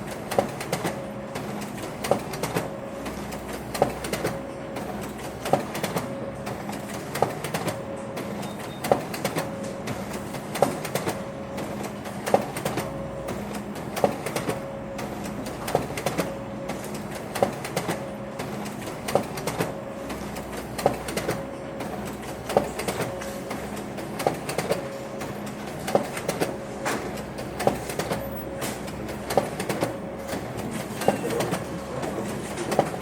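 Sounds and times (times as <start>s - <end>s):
printer clicking: 0.0s - 33.0s
printer whirr: 0.0s - 33.0s.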